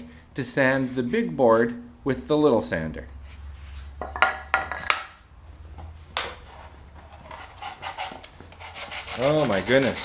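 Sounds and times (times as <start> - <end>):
hand sander scraping wood: 6.4 - 10.0.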